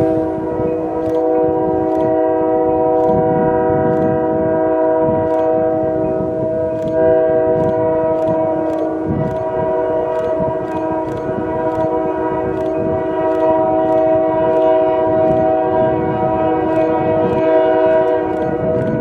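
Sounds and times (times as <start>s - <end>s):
locomotive air horn blast: 0.0s - 19.0s
low rumble of moving train: 0.0s - 19.0s
faint clicks: 1.0s - 4.6s, 5.2s - 5.8s, 6.7s - 15.5s, 16.7s - 19.0s.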